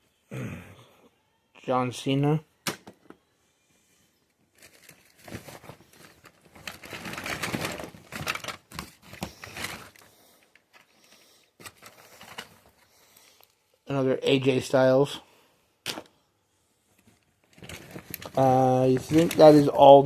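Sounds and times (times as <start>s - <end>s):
plastic bag rustling and crinkling: 4.4s - 13.6s, 16.9s - 20.0s.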